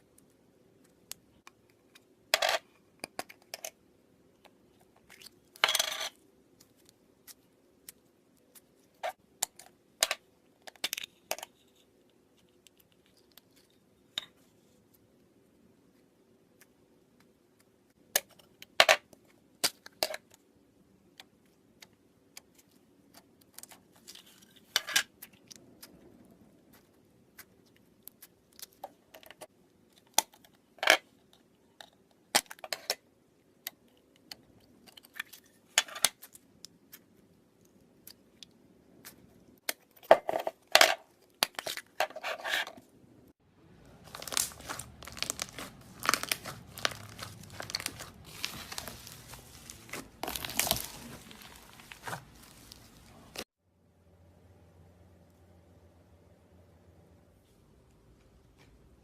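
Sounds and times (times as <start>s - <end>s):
slime clicking and crackling: 44.0s - 53.4s.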